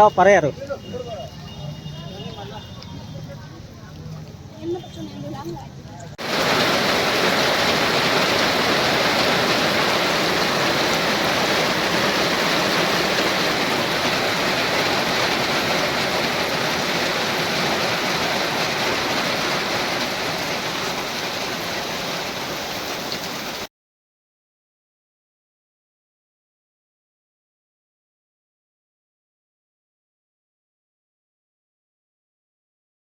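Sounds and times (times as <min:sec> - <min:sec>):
heavy rain falling: 0:00.0 - 0:23.7.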